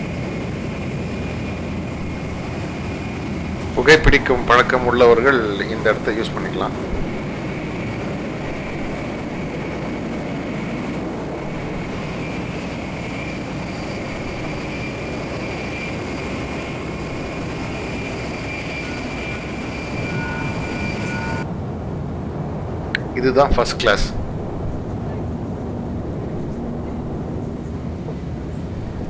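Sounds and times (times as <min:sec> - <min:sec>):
faint high whine: 0:00.0 - 0:21.5
train rumble inside carriage: 0:00.0 - 0:23.1, 0:24.0 - 0:29.0.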